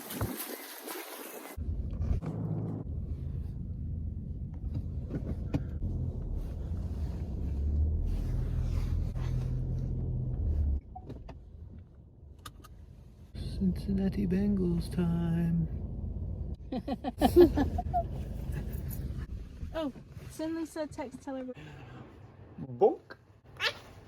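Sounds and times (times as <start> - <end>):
low motor rumble: 1.6 - 20.3.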